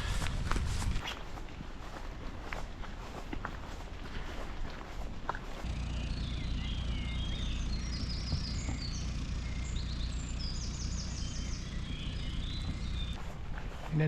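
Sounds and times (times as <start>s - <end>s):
steady low rumble: 1.6s - 14.0s
songbirds singing: 3.1s - 14.0s.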